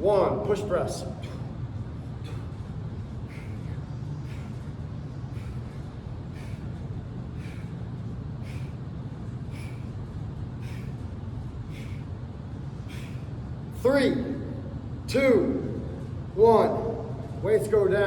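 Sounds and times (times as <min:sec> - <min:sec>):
steady low hum: 0:00.0 - 0:18.0
sharp exhaled breaths: 0:01.0 - 0:13.8.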